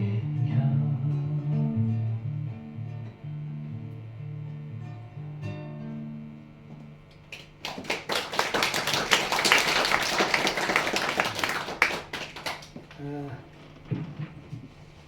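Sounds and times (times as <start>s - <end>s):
audience applauding: 7.3s - 13.2s.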